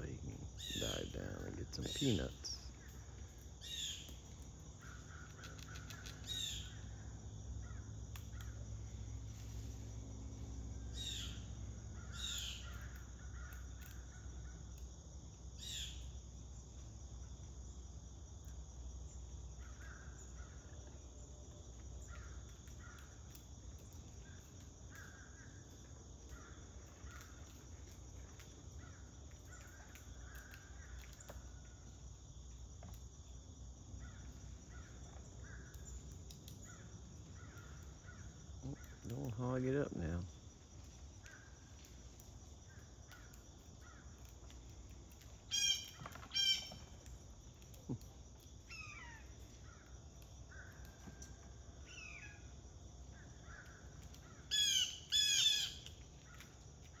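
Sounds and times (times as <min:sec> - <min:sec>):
high insect trill: 0:00.0 - 0:57.0
small birds chirping: 0:00.0 - 0:57.0
blue jay squawking: 0:45.5 - 0:46.8, 0:54.5 - 0:55.8.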